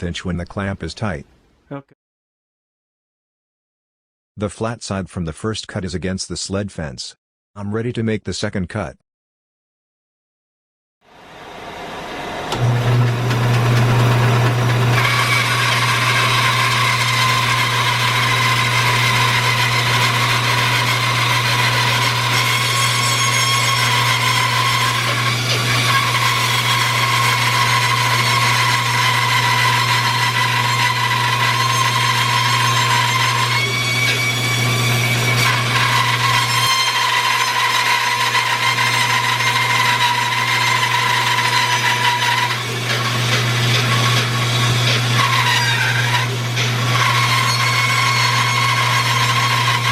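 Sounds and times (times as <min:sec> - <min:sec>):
bandsaw cutting log: 0:12.5 - 0:49.9.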